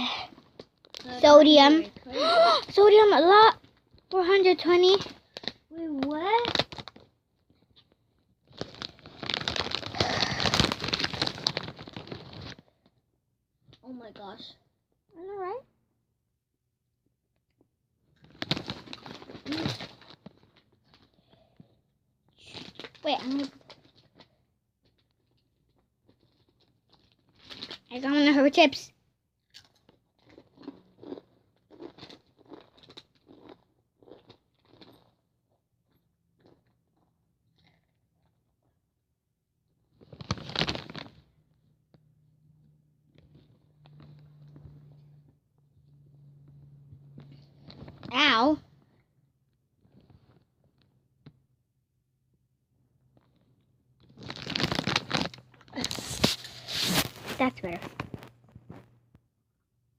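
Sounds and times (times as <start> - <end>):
foil chip bag crinkling: 6.4 - 7.1, 8.5 - 12.6, 18.2 - 21.1, 26.0 - 27.8, 40.0 - 41.2, 54.0 - 58.9
person chewing crunchy chips: 8.5 - 12.5, 24.9 - 27.8, 29.4 - 35.3, 35.9 - 38.4, 54.0 - 57.4.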